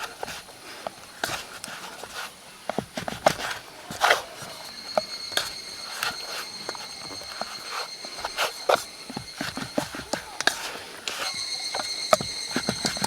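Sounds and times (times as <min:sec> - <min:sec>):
steady high-pitched tone: 0:03.5 - 0:13.0.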